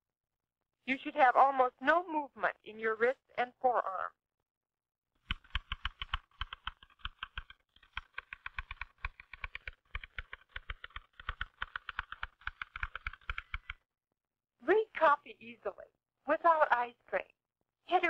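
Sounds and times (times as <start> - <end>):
typewriter typing fast: 5.3 - 13.8.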